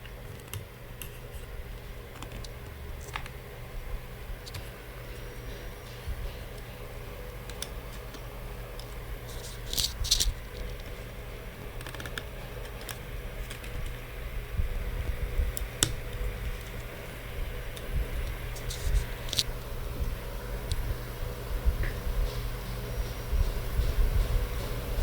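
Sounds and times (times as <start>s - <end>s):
steady low hum: 0.0s - 25.0s
scratchy rustles: 8.8s - 14.0s, 18.0s - 19.6s.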